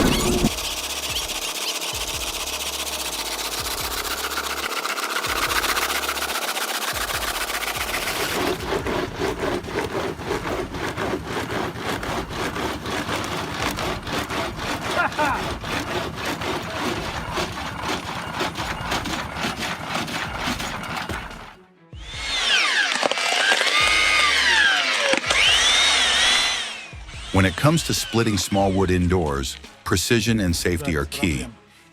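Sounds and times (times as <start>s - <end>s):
engine-driven machinery running: 0.0s - 28.2s
rapid rhythmic knocking: 0.4s - 21.6s.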